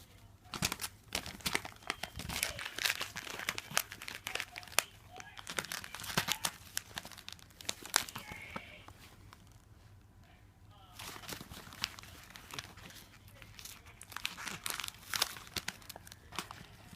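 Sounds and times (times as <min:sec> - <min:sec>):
paper crinkling and rustling: 0:00.0 - 0:09.8, 0:10.9 - 0:16.9.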